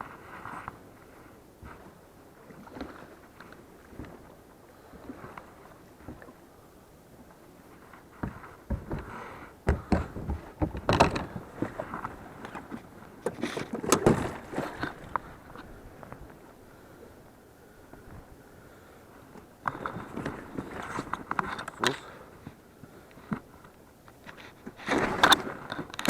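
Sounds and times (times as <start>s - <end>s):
hollow knocks on a boat: 8.1s - 16.2s.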